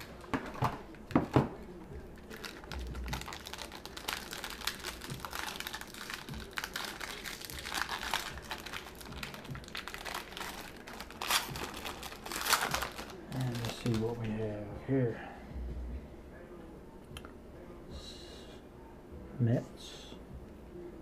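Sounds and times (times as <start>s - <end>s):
plastic wrapping crinkling: 0.0s - 14.4s
packaging rustling: 2.2s - 14.2s.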